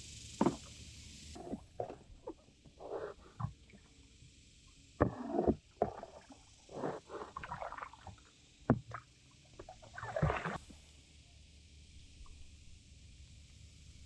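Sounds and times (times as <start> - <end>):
water splashing and sloshing: 0.4 - 4.1, 5.0 - 10.9.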